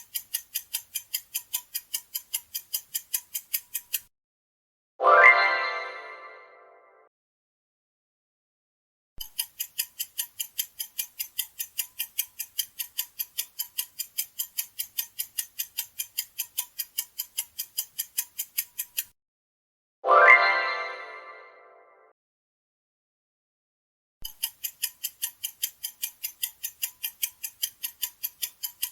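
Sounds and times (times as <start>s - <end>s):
clock ticking: 0.0s - 4.1s, 9.2s - 19.1s, 24.2s - 28.9s.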